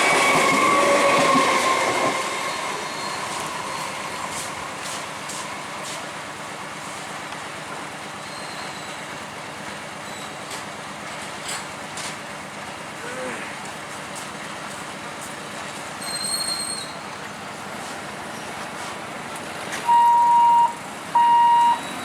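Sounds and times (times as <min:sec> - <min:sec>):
electric train passing: 0:00.0 - 0:06.8
steady train rumble: 0:00.0 - 0:08.2.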